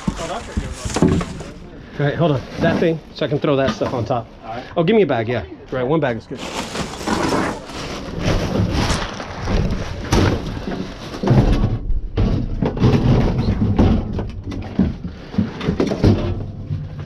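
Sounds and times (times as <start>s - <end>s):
knocks and thumps of junk: 0.0s - 1.6s, 6.4s - 17.0s
rustling of bags: 0.0s - 4.2s, 6.1s - 17.0s.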